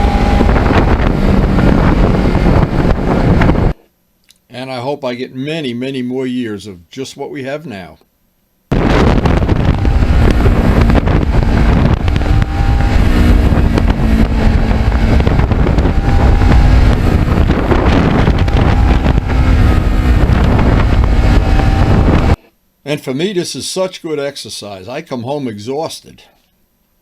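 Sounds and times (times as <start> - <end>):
motorcycle engine running: 0.0 - 3.8, 8.7 - 22.4
wind buffeting microphone: 0.0 - 3.8, 8.7 - 22.4.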